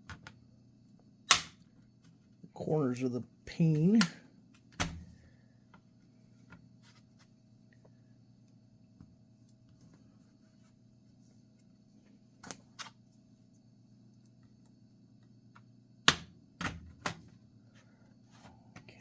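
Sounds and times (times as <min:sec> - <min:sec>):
faint low hum: 0:00.0 - 0:19.0
plastic clips snapping: 0:01.3 - 0:01.6.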